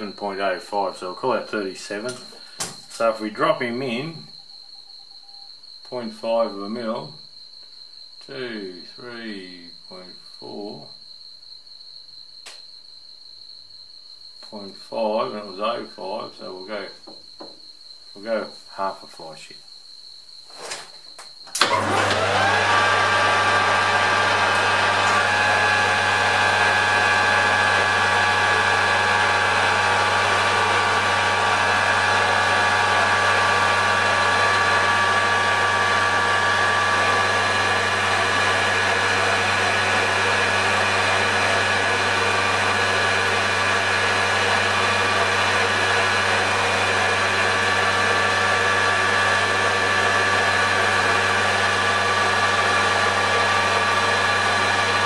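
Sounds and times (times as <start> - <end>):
metal lathe running: 21.6 - 55.0.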